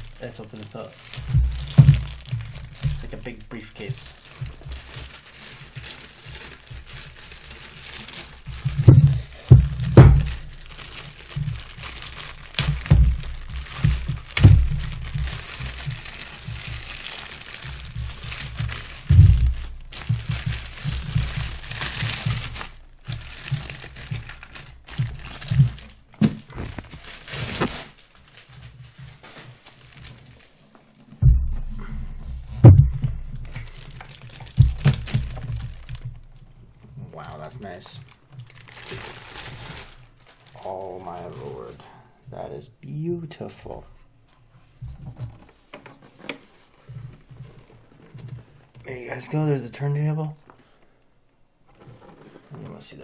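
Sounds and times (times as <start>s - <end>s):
packing material crinkling and tearing: 0.0s - 31.0s, 31.6s - 42.0s, 44.8s - 49.5s, 51.7s - 53.0s
knocks and thumps: 1.0s - 5.2s, 6.4s - 27.8s, 31.2s - 37.0s.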